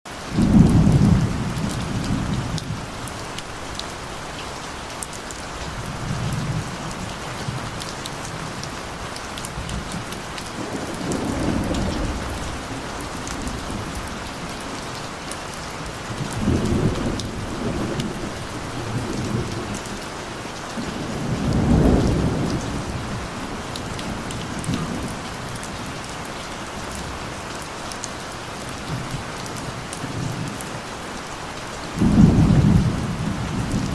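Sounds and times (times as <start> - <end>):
rain falling: 0.1 - 33.9
distant thunder rolling: 0.3 - 2.9, 9.6 - 14.8, 20.9 - 25.2, 32.0 - 33.9.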